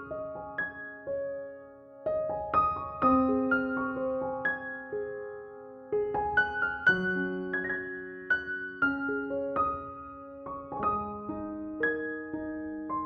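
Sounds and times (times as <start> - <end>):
slow piano music: 0.0 - 13.0.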